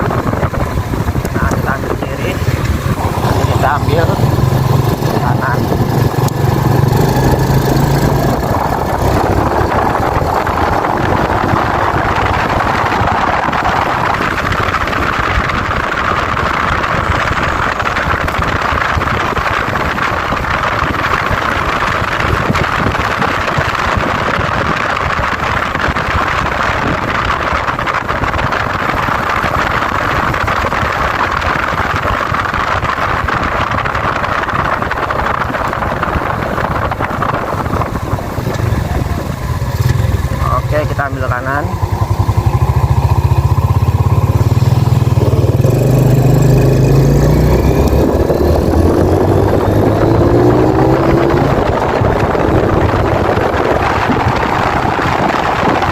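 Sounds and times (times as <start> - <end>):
motorcycle engine: 0.0 - 55.9
wind noise: 0.0 - 55.9.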